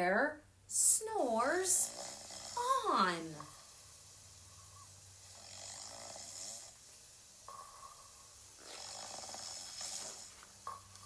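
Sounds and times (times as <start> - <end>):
cartoon snoring: 1.4 - 3.4, 5.2 - 6.8, 8.6 - 10.3.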